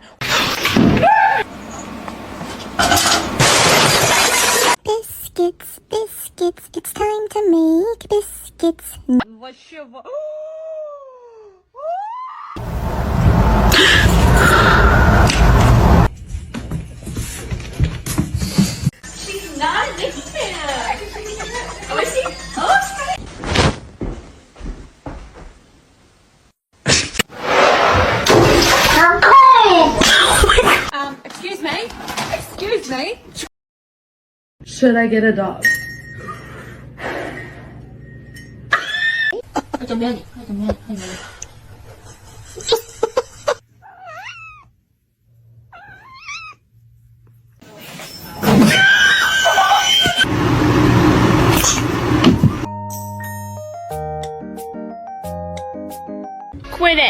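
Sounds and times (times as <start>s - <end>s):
cat yowling: 1.0s - 1.5s, 43.8s - 44.7s, 45.7s - 46.6s
cat meowing: 43.8s - 44.7s, 45.7s - 46.6s.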